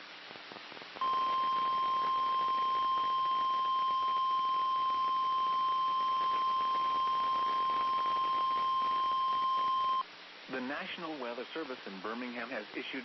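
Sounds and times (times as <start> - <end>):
faint radio static: 0.0 - 13.0
steady high alarm beep: 1.0 - 10.0.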